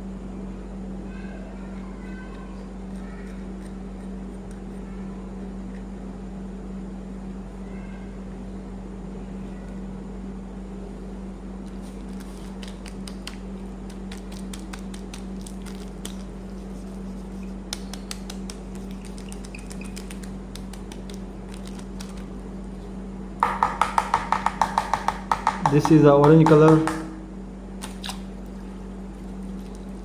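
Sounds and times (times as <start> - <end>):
steady low hum: 0.0 - 30.0
plastic toys clicking and crackling: 17.8 - 22.3.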